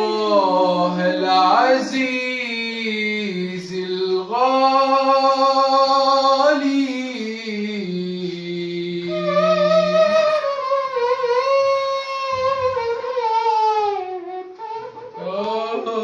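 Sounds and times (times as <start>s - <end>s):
slow sliding voice-like melody: 0.0s - 2.0s, 7.9s - 13.3s, 14.0s - 16.0s.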